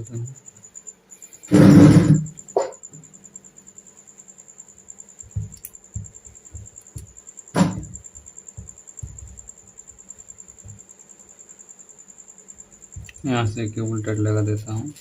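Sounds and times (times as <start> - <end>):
faint high whine: 0.0 - 15.0
soft dull knocks: 5.2 - 9.5.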